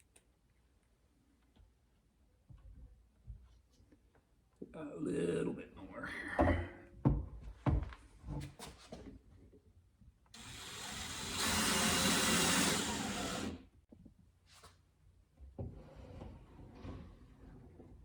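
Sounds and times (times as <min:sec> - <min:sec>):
power drill driving screw: 0:10.4 - 0:13.6.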